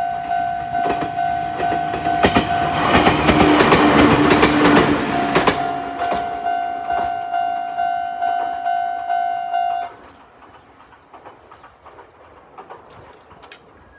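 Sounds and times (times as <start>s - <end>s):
level-crossing alarm ringing: 0.0s - 10.0s
train wheels clicking on rails: 0.2s - 7.2s, 9.8s - 13.9s.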